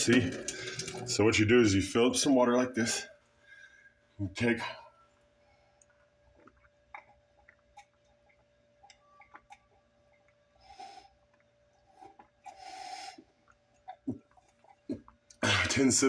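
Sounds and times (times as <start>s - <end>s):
person breathing: 3.4s - 4.0s
swallowing gulps: 6.2s - 10.5s, 13.2s - 15.6s.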